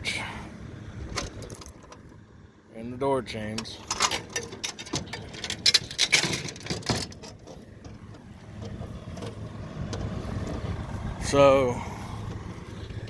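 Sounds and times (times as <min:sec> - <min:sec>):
low steady hum: 0:00.0 - 0:13.0
metal chains jingling: 0:01.2 - 0:02.1, 0:03.7 - 0:09.4, 0:10.2 - 0:10.7.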